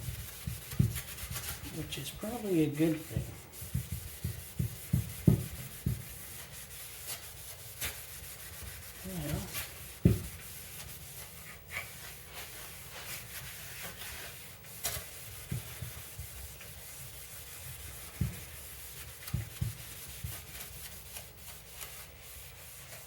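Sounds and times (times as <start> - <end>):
pad scrubbing plastic: 0.0 - 23.0.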